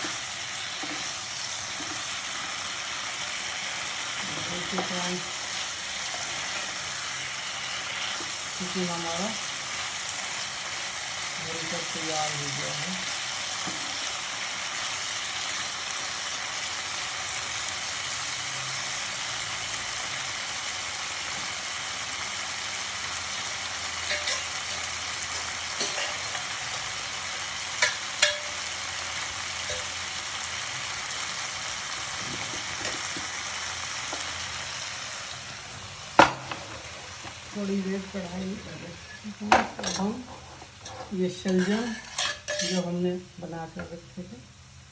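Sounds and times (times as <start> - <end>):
chicken frying in a pan: 0.0 - 44.9.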